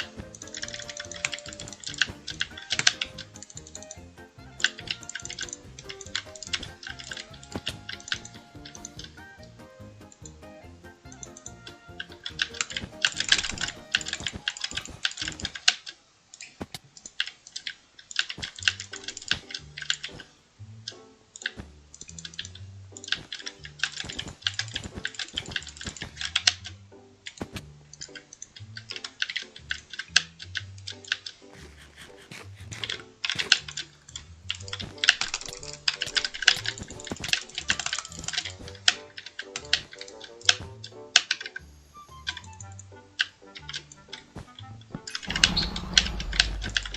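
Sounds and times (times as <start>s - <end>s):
background music with bass line: 0.0s - 14.4s
keyboard typing: 0.0s - 15.8s, 34.5s - 41.4s.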